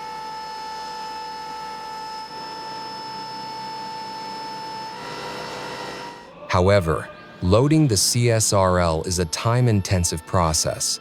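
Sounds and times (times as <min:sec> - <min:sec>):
high whine: 0:00.0 - 0:11.0
mechanical hum: 0:00.0 - 0:11.0.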